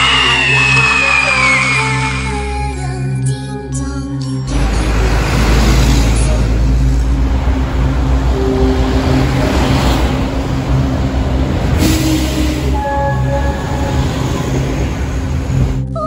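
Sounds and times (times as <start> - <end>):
music: 0.0 - 16.0
heavy vehicle rumbling: 3.8 - 16.0.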